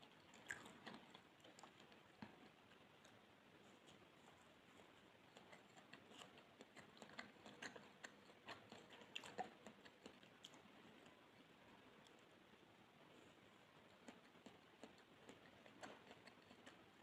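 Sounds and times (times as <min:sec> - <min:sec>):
wet mouth clicks chewing: 0:00.0 - 0:03.2, 0:05.2 - 0:11.4, 0:13.8 - 0:17.0.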